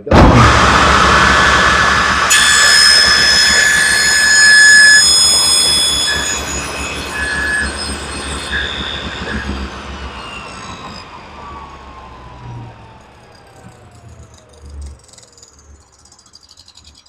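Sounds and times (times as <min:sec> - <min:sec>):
table saw blade spinning down: 0:00.0 - 0:17.0.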